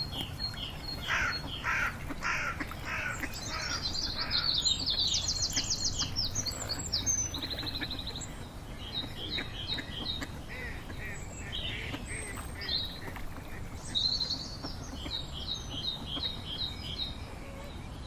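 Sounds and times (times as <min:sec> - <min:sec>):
songbirds chirping and trilling: 0:00.0 - 0:18.0.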